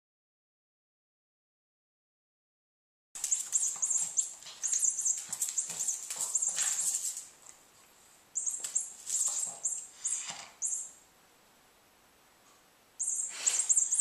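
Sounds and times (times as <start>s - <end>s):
cat toy squeaking: 3.2s - 7.2s, 8.4s - 11.0s, 13.0s - 14.0s.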